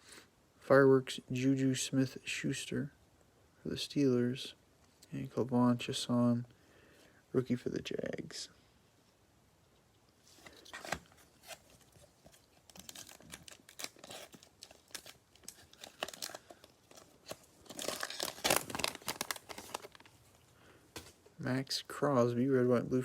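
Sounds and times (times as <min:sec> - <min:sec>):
cellophane wrapper crinkling and tearing: 0:10.4 - 0:20.4.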